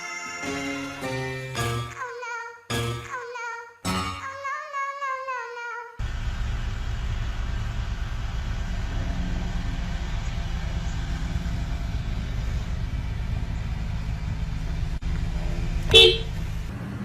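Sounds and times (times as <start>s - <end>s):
rumbling vehicle noise: 6.0s - 17.0s.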